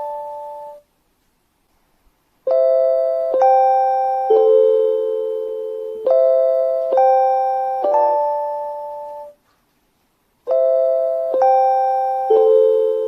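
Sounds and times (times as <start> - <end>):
electronic bell-tone chime tune: 2.5 - 9.4, 10.5 - 13.0.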